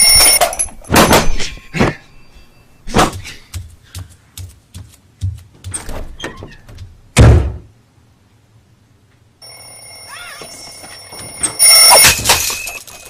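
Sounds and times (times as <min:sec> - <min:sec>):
loud cartoon thump: 0:07.2 - 0:07.7
loud door slam: 0:07.2 - 0:07.7.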